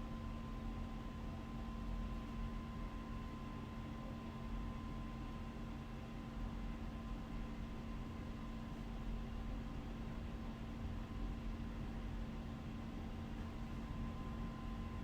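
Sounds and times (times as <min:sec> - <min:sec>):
faint high whine: 0:13.0 - 0:15.0.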